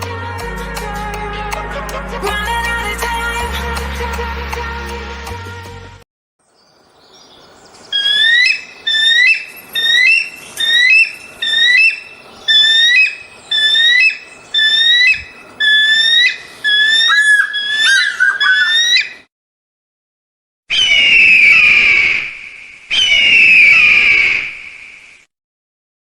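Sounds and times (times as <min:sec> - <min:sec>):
eagle calls: 0:07.3 - 0:19.2.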